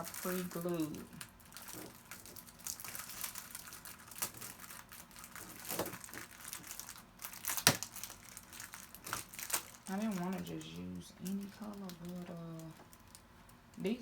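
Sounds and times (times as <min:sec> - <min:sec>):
rhinestones rustling and clicking: 0:00.0 - 0:14.0.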